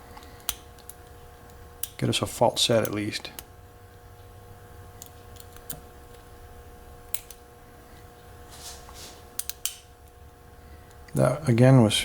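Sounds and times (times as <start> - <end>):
lock pick metallic clicks: 7.1 - 7.4, 9.4 - 9.9.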